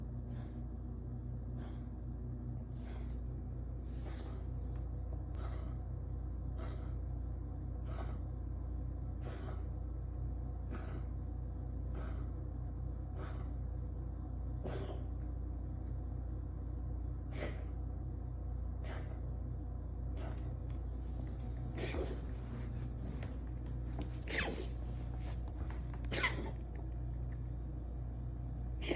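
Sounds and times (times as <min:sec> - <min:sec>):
steady low hum: 0:00.0 - 0:28.9
cat wheezy breaths: 0:00.2 - 0:00.8, 0:01.4 - 0:05.9, 0:06.5 - 0:07.1, 0:07.7 - 0:08.4, 0:09.1 - 0:09.8, 0:10.6 - 0:12.4, 0:13.0 - 0:13.6, 0:17.3 - 0:17.8, 0:18.8 - 0:19.2, 0:20.2 - 0:23.4
cat hacking and coughing: 0:10.7 - 0:11.1, 0:14.6 - 0:15.2, 0:17.3 - 0:17.8, 0:18.8 - 0:19.2, 0:21.8 - 0:22.3, 0:24.3 - 0:24.8, 0:26.0 - 0:26.7.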